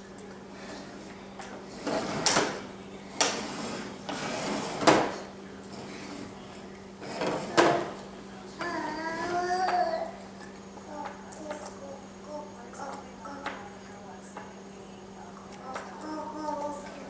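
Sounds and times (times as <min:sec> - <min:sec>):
dishwasher rack rolling and rattling: 0:01.7 - 0:06.4.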